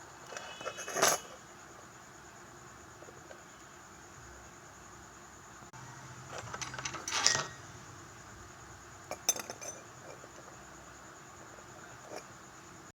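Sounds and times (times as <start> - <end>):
kitchenware clinking: 6.2 - 7.8, 9.1 - 10.3.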